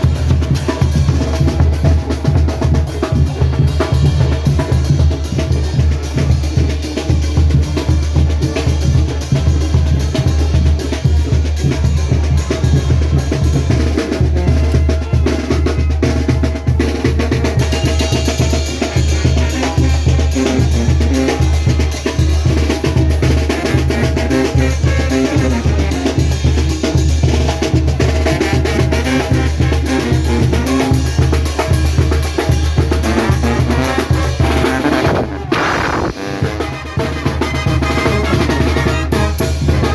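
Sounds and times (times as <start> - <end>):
bass drum and snare beat: 0.0 - 39.9
brass band music: 0.0 - 39.9
horns melody: 23.5 - 26.4, 28.4 - 39.9.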